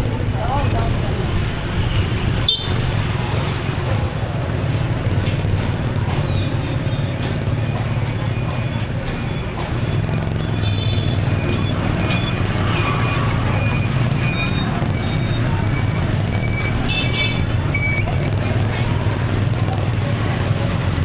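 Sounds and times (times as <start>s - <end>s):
motorbike engine rumble: 0.0s - 21.0s
road noise: 0.0s - 21.0s.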